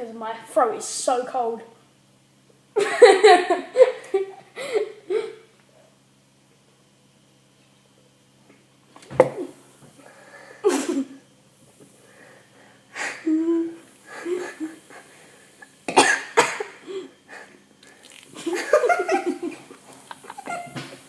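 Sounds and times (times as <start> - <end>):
person coughing and spluttering: 10.7 - 11.2, 15.8 - 17.1.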